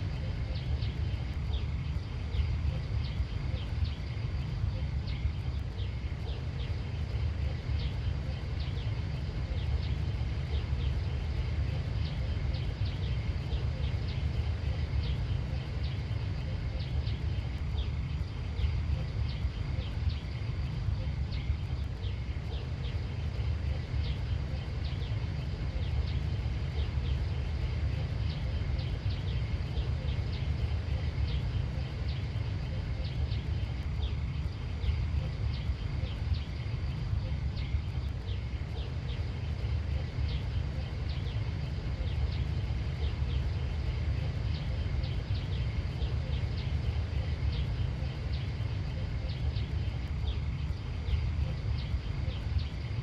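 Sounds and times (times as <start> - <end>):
small birds chirping: 0.0 - 53.0
steady low rumble: 0.0 - 53.0.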